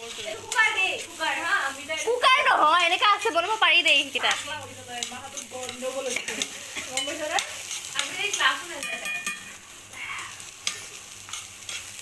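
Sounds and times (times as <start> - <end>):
utensil scraping a pan: 0.0 - 9.6, 10.2 - 12.0
chicken sizzling in a pan: 0.0 - 12.0.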